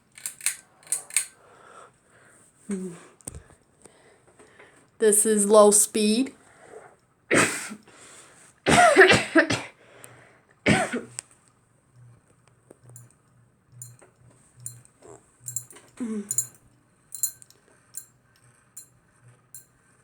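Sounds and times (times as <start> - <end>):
ceiling fan humming: 7.7 - 20.0
person coughing: 8.7 - 9.8, 10.7 - 11.1.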